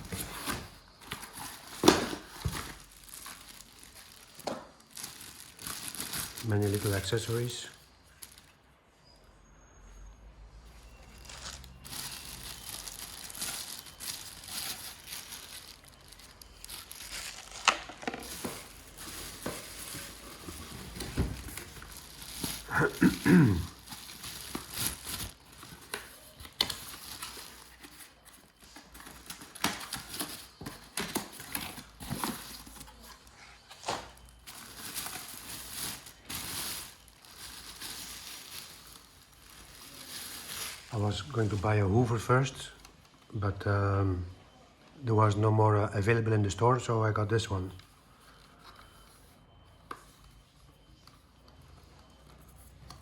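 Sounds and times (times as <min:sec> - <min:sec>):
plastic packaging crinkling: 0:00.0 - 0:08.8, 0:10.8 - 0:43.1.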